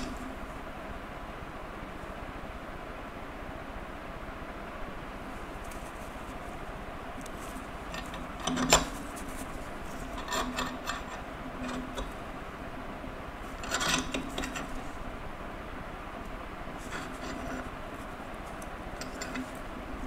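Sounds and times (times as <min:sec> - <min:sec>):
clicking and scraping on knife: 0:07.2 - 0:12.2, 0:13.5 - 0:14.8, 0:16.8 - 0:17.7, 0:18.5 - 0:19.7.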